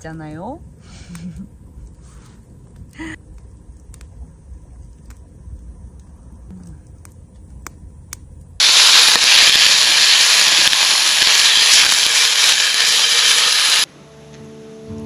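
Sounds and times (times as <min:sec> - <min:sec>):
campfire crackling: 0:00.0 - 0:13.9
steam hissing: 0:08.6 - 0:13.9.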